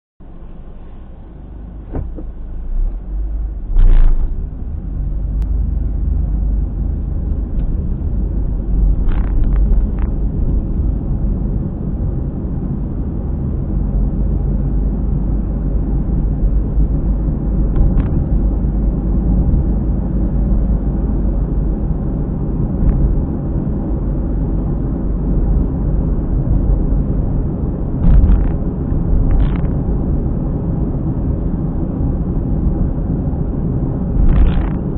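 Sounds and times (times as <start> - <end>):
road rumble inside car: 0.2 - 34.9
periodic tyre noise: 1.7 - 13.7, 25.7 - 30.5, 32.8 - 34.9.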